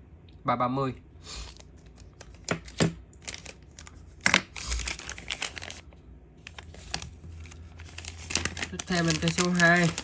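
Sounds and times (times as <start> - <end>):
packaging crinkling: 1.4 - 10.0.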